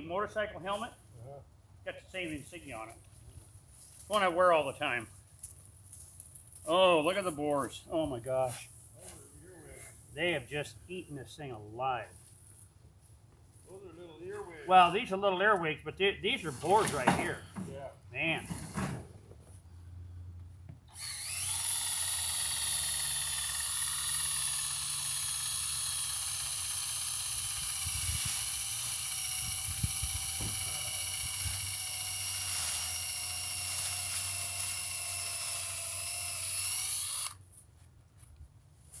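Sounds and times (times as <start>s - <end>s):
power drill boring into wood: 20.9s - 37.4s.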